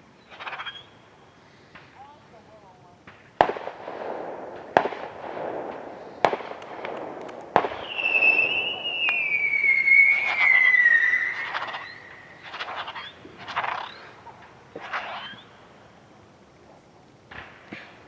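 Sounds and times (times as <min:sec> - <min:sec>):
firework crackling: 0:00.0 - 0:18.0
falling firework whistle: 0:00.2 - 0:01.0, 0:04.8 - 0:15.6
firework bangs with echoing rumble: 0:01.7 - 0:15.8, 0:17.2 - 0:18.0.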